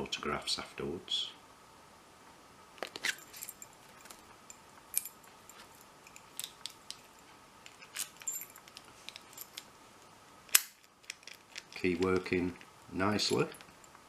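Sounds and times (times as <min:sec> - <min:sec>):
metallic key jingles: 0:03.0 - 0:09.7.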